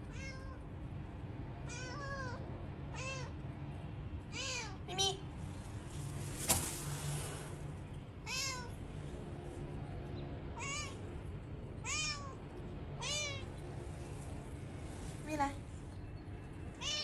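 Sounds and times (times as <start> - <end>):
cat meowing: 0.1 - 0.6, 1.7 - 3.4, 8.3 - 8.7, 10.6 - 11.0, 11.8 - 12.4, 13.0 - 13.5, 16.8 - 17.0.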